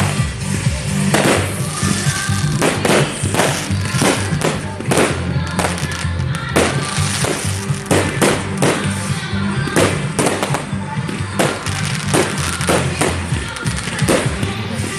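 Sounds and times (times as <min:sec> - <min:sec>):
music with bass line: 0:00.0 - 0:14.9
firework shells bursting: 0:01.1 - 0:09.1, 0:11.4 - 0:14.4.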